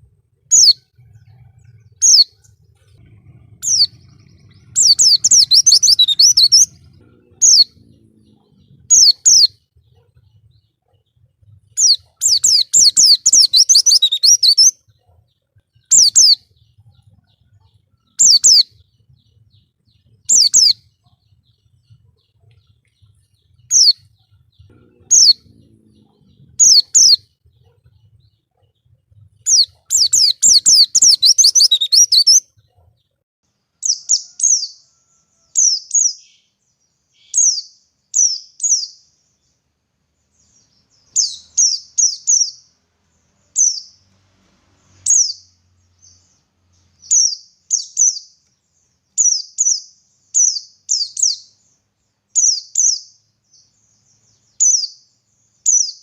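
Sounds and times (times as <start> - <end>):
bird twittering: 0.5 - 9.6, 11.8 - 14.8, 15.9 - 16.4, 18.1 - 18.7, 20.3 - 20.8, 24.7 - 27.3, 29.4 - 32.4
high bird chirps: 0.5 - 10.6, 11.7 - 14.9, 15.8 - 28.3, 29.4 - 32.5, 33.8 - 36.6, 40.4 - 42.8, 44.8 - 48.5, 49.1 - 51.8.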